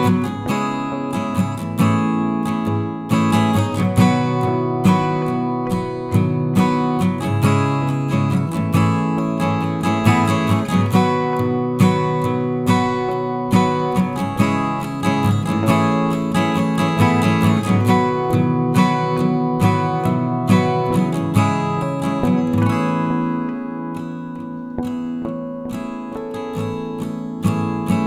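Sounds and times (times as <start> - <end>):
strummed acoustic guitar: 0.0 - 28.0.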